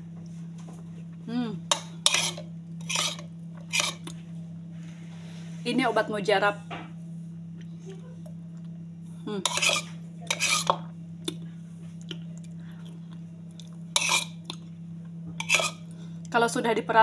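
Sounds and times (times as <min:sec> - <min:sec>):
low electrical hum: 0:00.0 - 0:17.0
metal spoon clinking on a dish: 0:01.7 - 0:04.1, 0:09.5 - 0:10.8, 0:14.0 - 0:14.4, 0:15.4 - 0:15.8.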